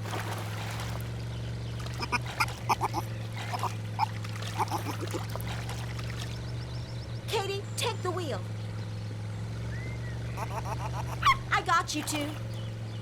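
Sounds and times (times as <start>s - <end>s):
squeaky quack-like calls: 2.0s - 5.2s, 10.4s - 11.6s.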